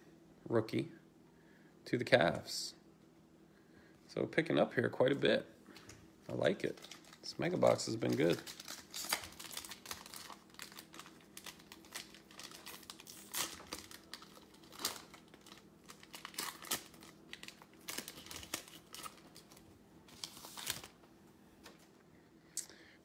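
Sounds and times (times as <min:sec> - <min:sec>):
plastic wrapper crinkling: 0:06.4 - 0:21.0.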